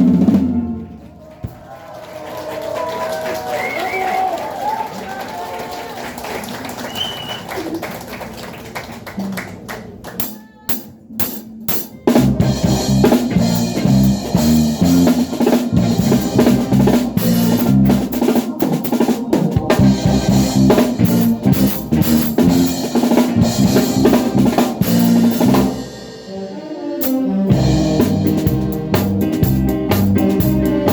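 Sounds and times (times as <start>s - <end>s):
live band playing loudly: 0.0s - 1.6s, 10.2s - 30.9s
strong bass line: 12.1s - 26.0s, 27.5s - 30.9s.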